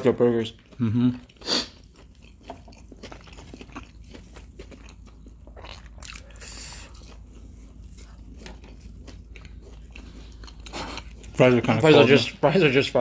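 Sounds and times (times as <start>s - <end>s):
chewing crunchy fried food: 0.0s - 12.8s.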